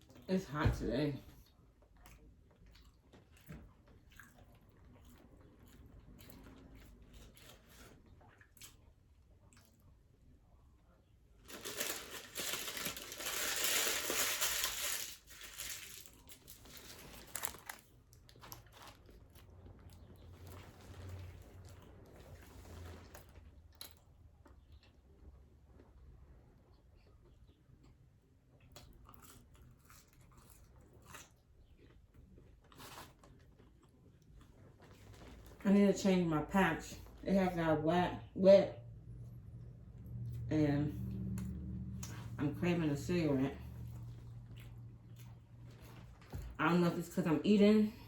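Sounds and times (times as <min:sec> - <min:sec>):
chewing and crunching food: 0:00.0 - 0:00.4, 0:01.2 - 0:35.7, 0:38.9 - 0:46.8
paper packaging crinkling: 0:11.4 - 0:19.1.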